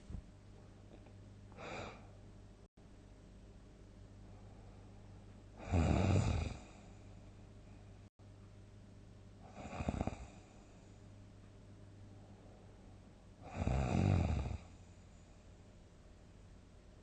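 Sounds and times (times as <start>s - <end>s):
steady low hum: 0.0s - 17.0s
person snoring loudly: 5.6s - 6.8s, 9.5s - 10.4s, 13.4s - 14.7s.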